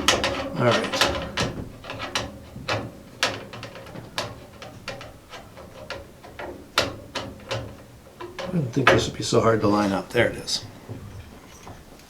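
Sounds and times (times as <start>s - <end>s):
heatsink clicks and knocks: 0.0s - 12.0s.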